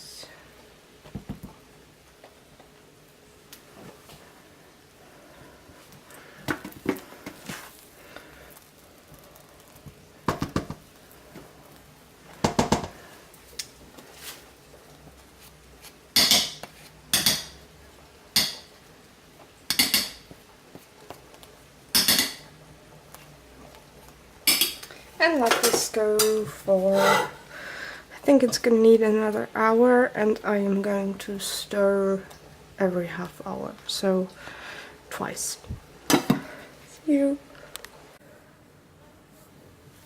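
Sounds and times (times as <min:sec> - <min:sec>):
utensil scraping pot sides: 0:26.8 - 0:27.4.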